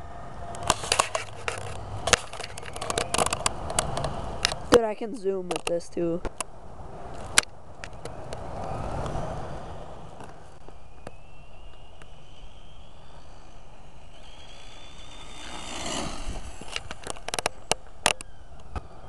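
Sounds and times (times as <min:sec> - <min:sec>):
rc car motor whining: 0:10.8 - 0:19.0.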